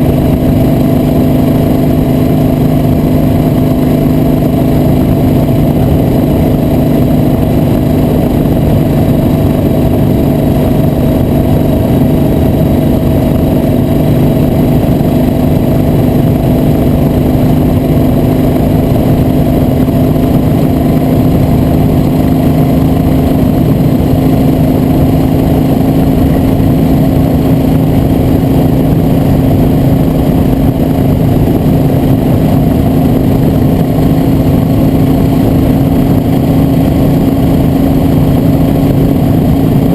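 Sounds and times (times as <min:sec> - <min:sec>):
road and wind noise: 0:00.0 - 0:39.9
vehicle engine cruising: 0:00.0 - 0:39.9.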